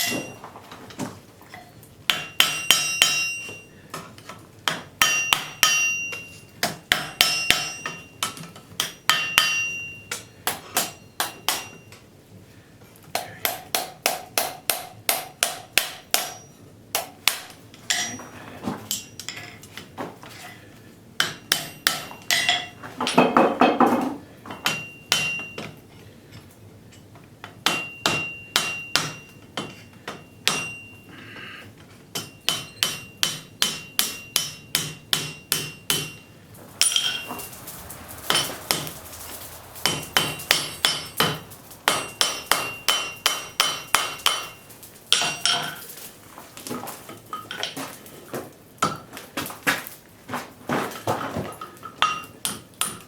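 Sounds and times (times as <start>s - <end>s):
hammer striking metal on anvil: 2.1s - 3.7s, 4.7s - 12.0s, 13.2s - 18.2s, 21.2s - 22.7s, 24.5s - 25.7s, 27.6s - 31.0s, 32.1s - 45.8s.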